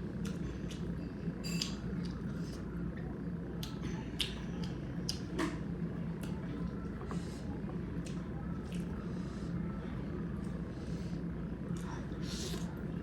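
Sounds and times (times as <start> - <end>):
low background hum: 0.0 - 13.0
chewing and lip smacks: 3.6 - 5.3.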